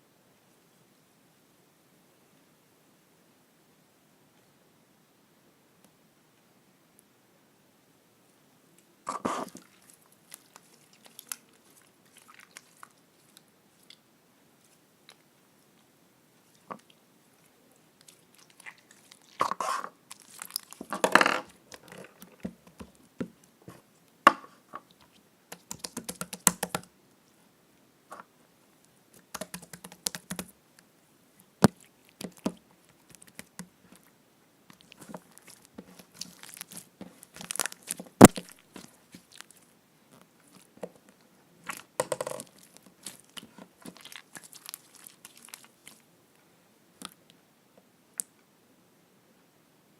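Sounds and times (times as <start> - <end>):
slime crackling and popping: 9.4 - 13.0, 20.1 - 23.0, 31.6 - 34.1, 34.7 - 39.6, 41.7 - 46.0.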